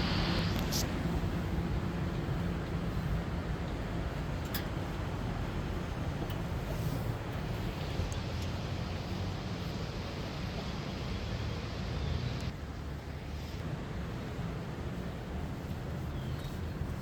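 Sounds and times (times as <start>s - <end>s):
high hiss: 0.0s - 0.9s
low outdoor rumble: 0.0s - 17.0s.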